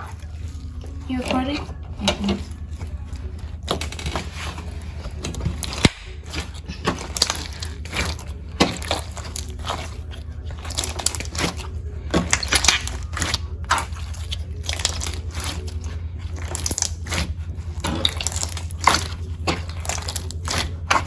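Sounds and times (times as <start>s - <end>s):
steady low hum: 0.0s - 21.0s
slime squished by hand: 5.4s - 21.0s.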